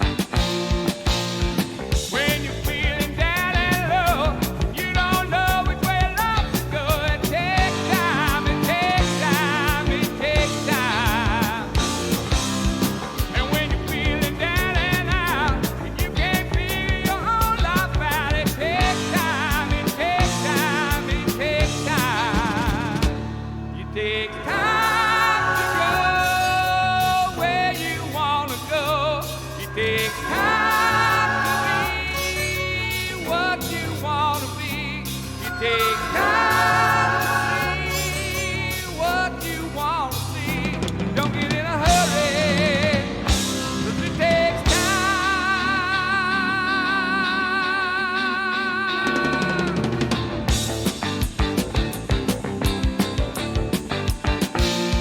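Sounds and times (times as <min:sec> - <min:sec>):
southern rock song: 0:00.0 - 0:55.0
person singing: 0:02.1 - 0:50.2.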